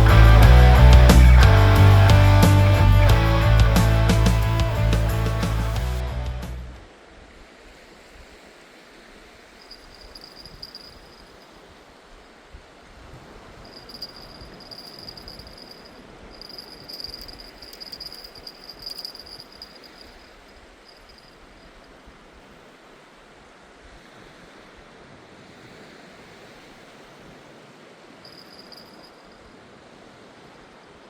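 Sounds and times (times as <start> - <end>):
surf washing on beach: 6.8 - 31.0.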